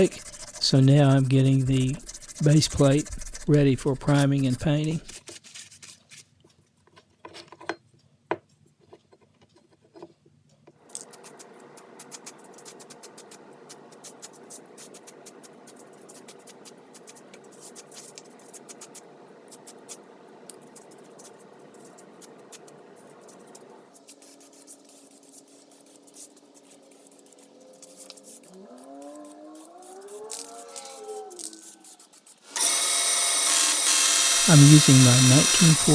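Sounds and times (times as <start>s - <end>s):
rasping on metal plate: 0.0s - 5.2s, 32.5s - 35.9s
motor rising in pitch: 28.5s - 31.8s, 32.5s - 35.9s.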